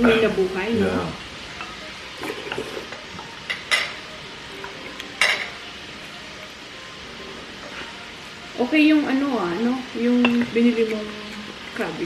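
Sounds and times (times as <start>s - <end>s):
utensils and dishes clinking: 1.5s - 5.7s, 10.1s - 12.0s.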